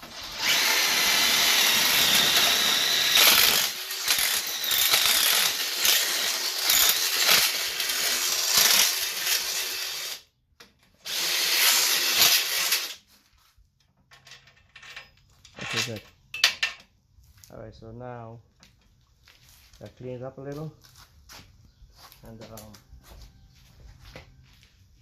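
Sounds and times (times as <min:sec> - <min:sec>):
cordless drill boring steel: 0:00.0 - 0:10.3, 0:11.0 - 0:13.0.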